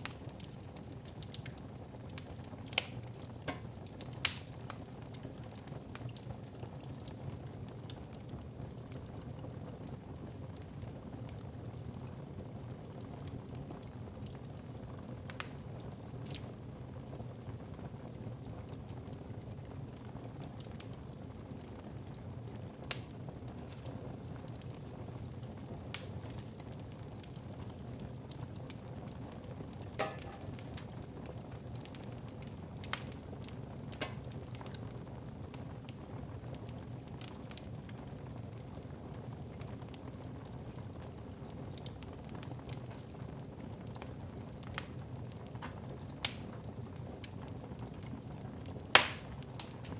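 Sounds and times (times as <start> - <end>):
fireplace fire crackling: 0.0 - 49.9.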